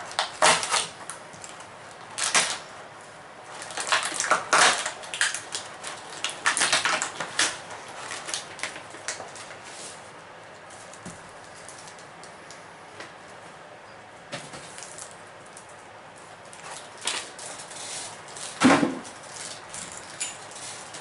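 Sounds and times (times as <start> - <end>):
packaging rustling: 3.5 - 10.0.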